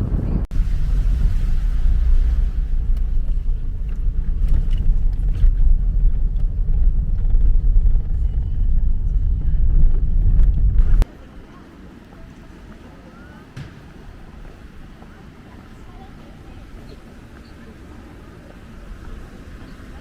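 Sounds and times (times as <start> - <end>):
wind buffeting microphone: 0.0 - 11.1.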